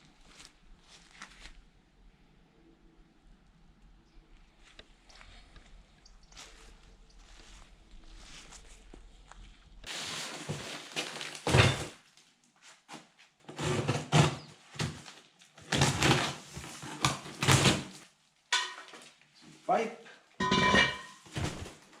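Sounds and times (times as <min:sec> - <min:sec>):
objects knocking and scraping: 0:10.0 - 0:12.0, 0:13.5 - 0:17.8, 0:18.5 - 0:19.1, 0:20.4 - 0:21.8.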